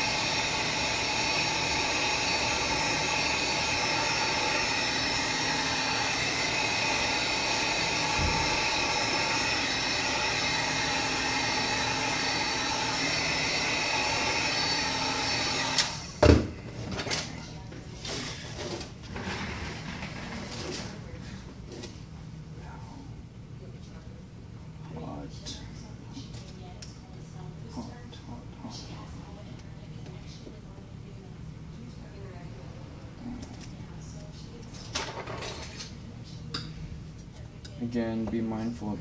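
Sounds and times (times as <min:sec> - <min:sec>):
heat gun whining: 0:00.0 - 0:16.4.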